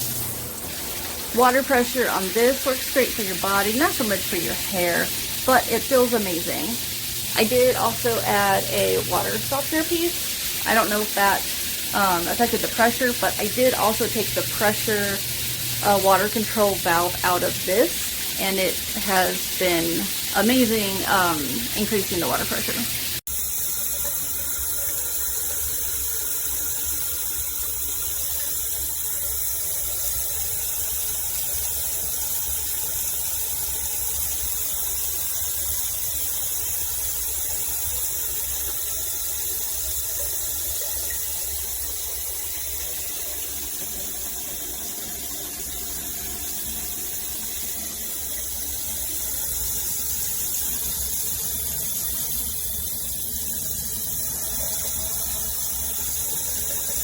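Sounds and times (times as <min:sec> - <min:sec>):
shower water running: 0:00.0 - 0:57.0.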